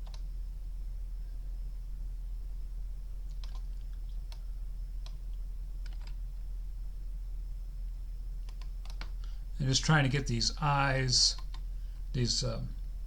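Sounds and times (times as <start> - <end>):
steady low hum: 0.0 - 13.0
mouse and keyboard clicks: 3.3 - 4.4, 5.8 - 6.2, 8.4 - 9.1.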